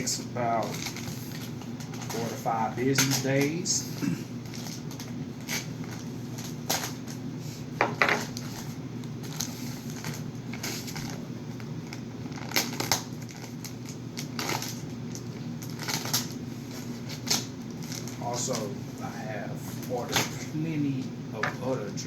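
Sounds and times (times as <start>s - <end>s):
package crinkling: 0.6s - 3.6s, 4.4s - 7.2s, 8.2s - 18.7s.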